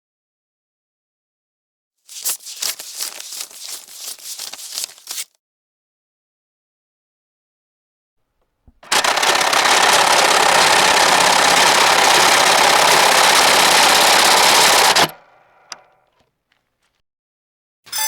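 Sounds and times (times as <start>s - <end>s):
money counting machine riffling: 2.1s - 5.3s, 8.8s - 15.9s.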